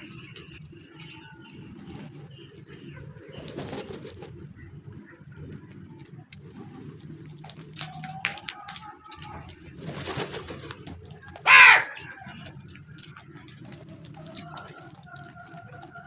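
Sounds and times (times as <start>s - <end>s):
murmur of birds: 0.0s - 16.0s
short bird calls and clicks: 11.2s - 16.0s
crow cawing: 11.4s - 12.4s.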